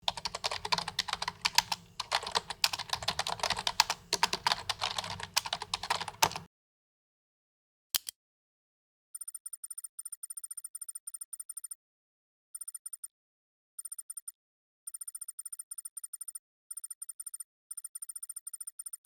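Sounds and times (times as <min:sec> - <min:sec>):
computer keyboard typing: 0:00.0 - 0:06.5.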